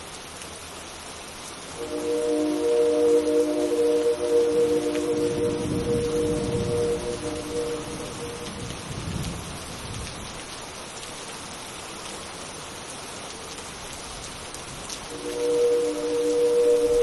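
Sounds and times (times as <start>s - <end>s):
steady rain: 0.0s - 17.0s
synthesized train horn chord: 1.7s - 9.2s, 15.1s - 17.0s
low thunder rumble: 1.8s - 10.4s.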